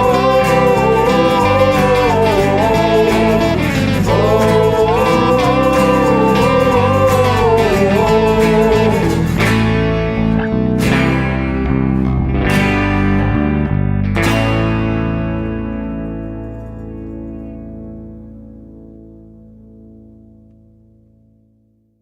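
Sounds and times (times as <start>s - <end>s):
guitar playing: 0.0s - 21.8s.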